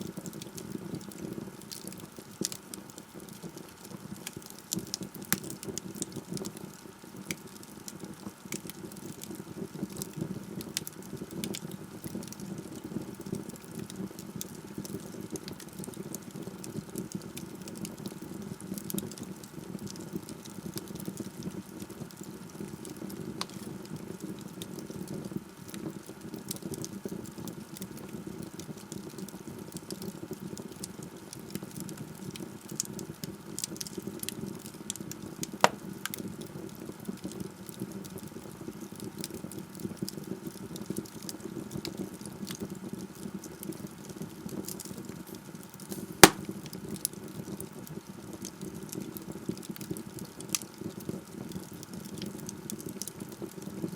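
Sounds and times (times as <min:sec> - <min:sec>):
log fire crackling: 0:00.0 - 0:24.6, 0:33.6 - 0:36.3, 0:44.6 - 0:48.0, 0:48.7 - 0:50.8
sharp pop from fire: 0:45.9 - 0:46.5.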